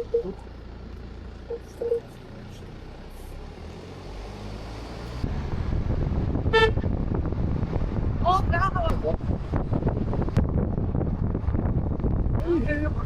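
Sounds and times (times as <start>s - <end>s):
low outdoor rumble: 0.0s - 3.5s, 4.8s - 13.0s
short horn toot: 6.5s - 6.9s.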